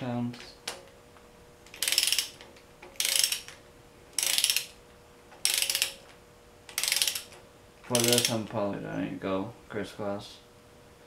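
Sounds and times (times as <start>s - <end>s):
socket ratchet clicking: 1.7s - 3.6s, 4.2s - 4.7s, 5.4s - 6.0s, 6.7s - 8.4s.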